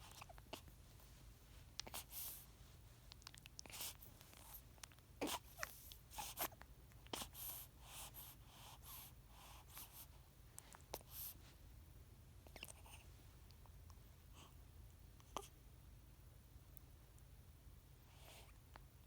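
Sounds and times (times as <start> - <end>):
soft baby breaths: 0.0 - 11.6, 18.0 - 18.6.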